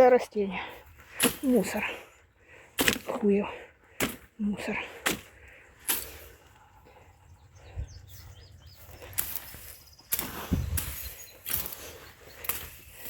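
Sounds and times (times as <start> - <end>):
machete chopping brush: 1.2 - 1.8, 2.8 - 3.3, 4.0 - 4.3, 5.0 - 6.2, 9.1 - 13.0
faint bird chirps: 6.8 - 13.0.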